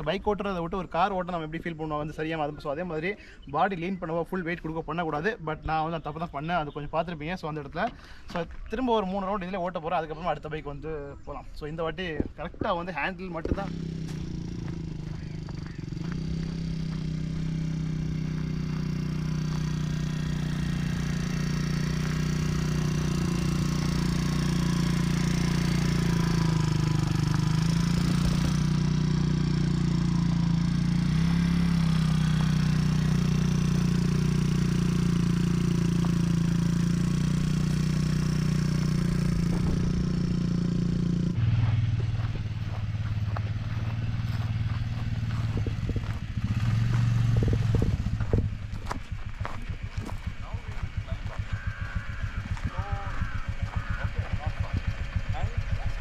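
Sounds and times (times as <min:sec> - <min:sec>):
quad bike engine running: 0:12.8 - 0:56.0.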